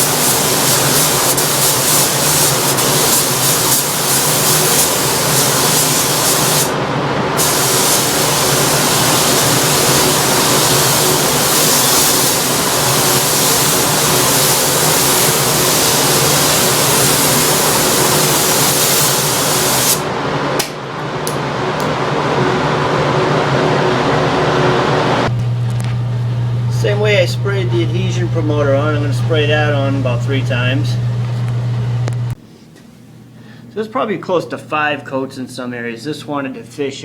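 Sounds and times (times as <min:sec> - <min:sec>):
spray hissing: 0:00.0 - 0:06.8, 0:07.4 - 0:20.1
low hum: 0:20.1 - 0:32.4.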